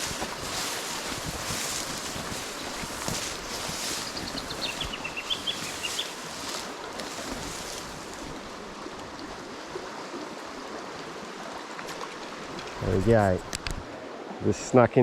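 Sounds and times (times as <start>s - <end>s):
wind on microphone: 0.0s - 9.3s
river water flowing over stones: 0.0s - 14.5s.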